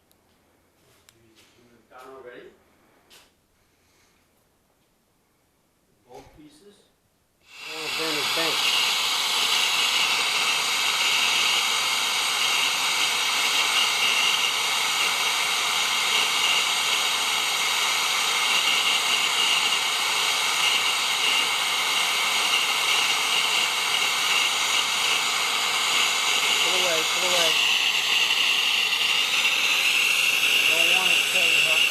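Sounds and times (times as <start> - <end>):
torch flame hissing: 7.4 - 31.9.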